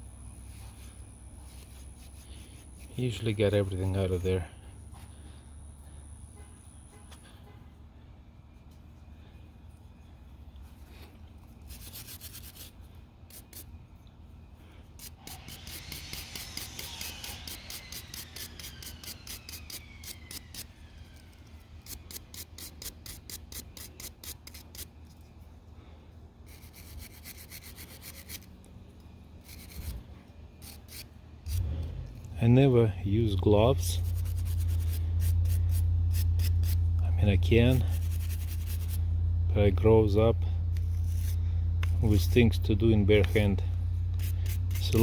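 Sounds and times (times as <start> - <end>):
hand scrubbing brass parts: 11.5 - 13.8, 14.6 - 19.6, 32.6 - 45.0.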